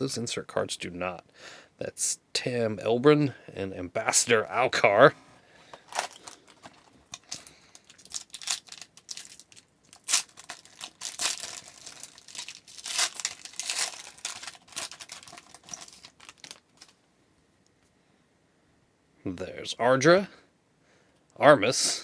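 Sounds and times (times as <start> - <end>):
cards rustling: 5.6 - 17.0
wrapper crinkling and tearing: 5.8 - 17.0.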